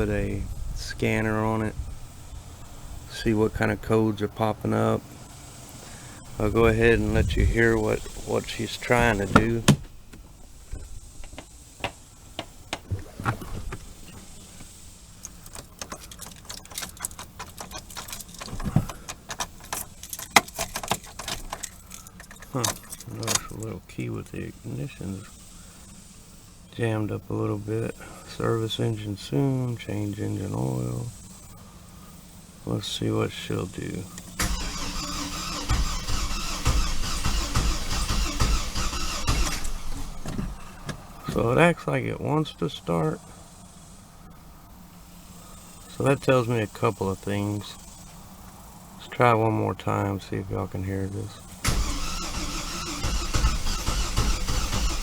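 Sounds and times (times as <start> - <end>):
engine cranking by starter: 0.0 - 25.6, 33.6 - 41.8, 50.6 - 55.0
dull thump: 8.9 - 14.7, 40.0 - 41.5
keys jangling and clicking: 15.3 - 23.5.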